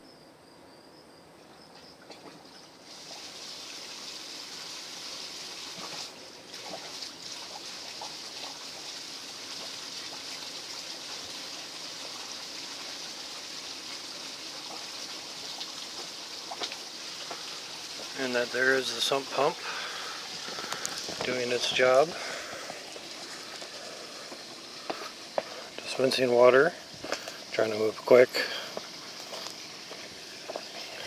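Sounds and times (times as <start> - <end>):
water rushing from pump outlet: 2.1 - 31.0.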